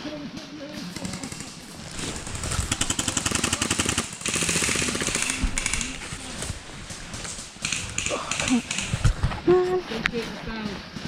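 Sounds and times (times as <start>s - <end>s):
airsoft gun automatic fire: 1.0s - 6.5s, 7.6s - 9.1s.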